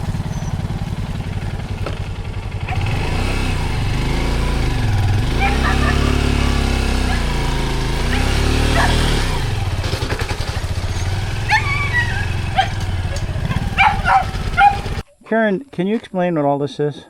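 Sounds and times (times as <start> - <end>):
motorcycle engine idling: 0.0 - 15.0
dog barking and yelping: 5.3 - 6.2, 6.9 - 9.2, 11.0 - 15.0.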